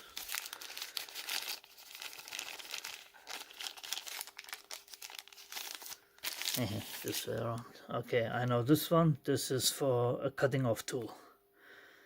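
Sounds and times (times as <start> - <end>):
packaging crinkling and rustling: 0.0 - 7.7.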